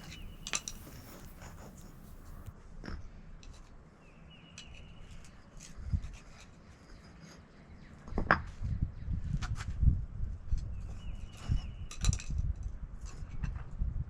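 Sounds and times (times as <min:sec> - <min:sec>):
scrapes and clicks of tools: 0:00.0 - 0:02.5.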